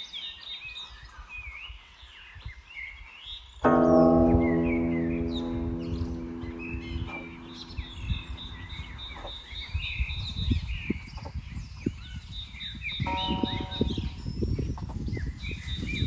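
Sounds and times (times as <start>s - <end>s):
birds chirping and calling: 3.3s - 16.0s
plucked zither note: 3.6s - 9.3s
steady high-pitched tone: 3.7s - 9.4s
low rumble: 3.8s - 9.8s.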